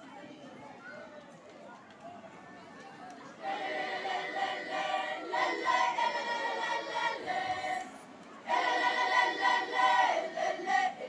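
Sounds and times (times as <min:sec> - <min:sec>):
choir singing held chords: 0:03.4 - 0:11.0.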